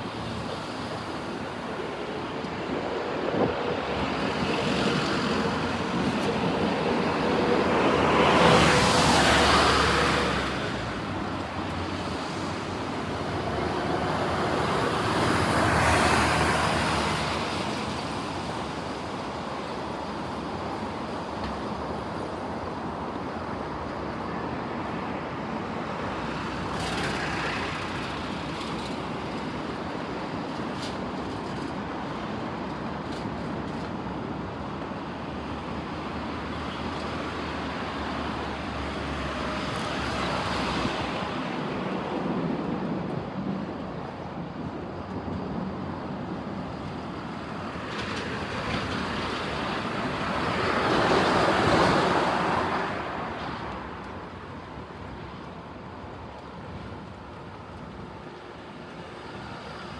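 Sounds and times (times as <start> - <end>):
vehicles passing: 0.0 - 18.9, 45.1 - 59.9.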